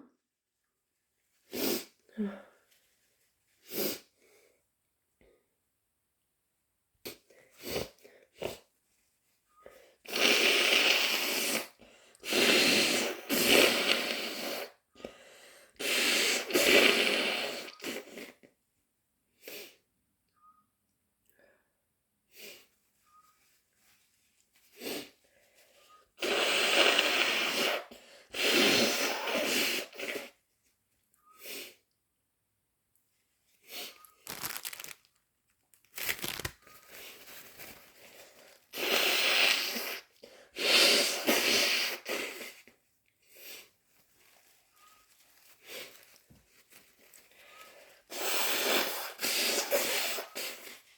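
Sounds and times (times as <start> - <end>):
sniffs and breaths: 24.6 - 30.4, 33.6 - 35.0, 36.7 - 50.9.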